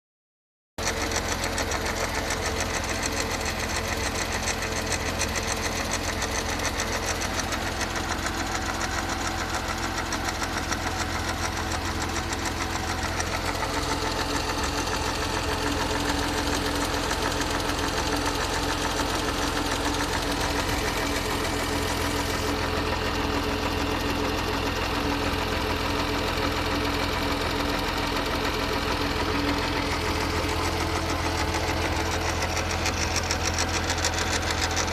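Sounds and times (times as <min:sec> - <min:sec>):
engine running: 0:00.9 - 0:34.9
fast knocking rattle: 0:01.2 - 0:23.0, 0:29.4 - 0:34.9.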